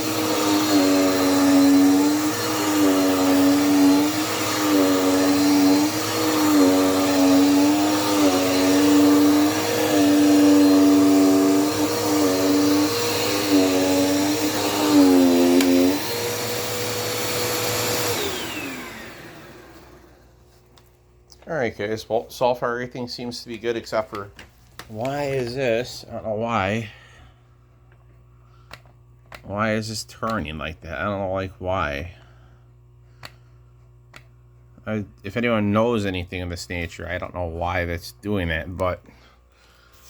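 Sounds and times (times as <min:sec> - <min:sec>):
vacuum motor winding down: 0:00.0 - 0:20.4
vacuum cleaner motor whine: 0:00.0 - 0:40.0.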